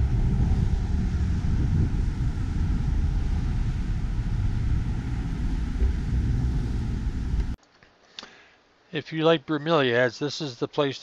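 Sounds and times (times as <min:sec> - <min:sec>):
low rumbling background noise: 0:00.0 - 0:07.6.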